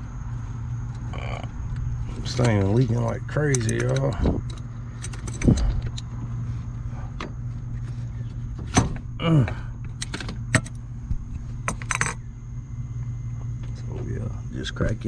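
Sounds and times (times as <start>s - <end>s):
steady low hum: 0.0s - 15.0s
metal tool clicks and clinks: 3.5s - 5.6s.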